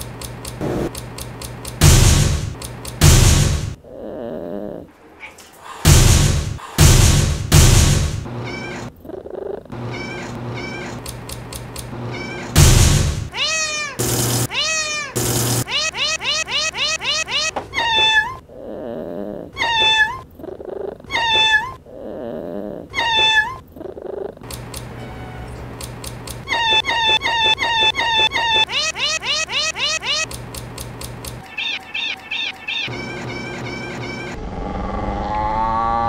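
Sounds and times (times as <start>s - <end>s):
cat purring: 3.8s - 5.4s, 9.0s - 9.8s, 18.5s - 19.6s, 20.4s - 21.1s, 21.8s - 24.4s
cats meowing: 4.7s - 5.7s, 8.4s - 9.0s, 9.6s - 11.0s, 12.1s - 12.6s, 13.3s - 18.4s, 19.4s - 21.8s, 22.8s - 25.7s, 26.4s - 30.3s, 31.4s - 34.4s.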